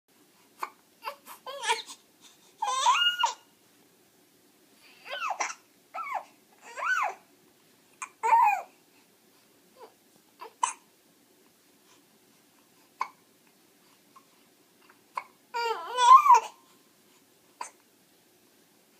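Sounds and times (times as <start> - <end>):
baby babbling: 0.6 - 2.0, 2.6 - 3.5, 5.0 - 7.2, 8.0 - 8.8, 15.1 - 16.6
baby hiccups: 10.4 - 10.9.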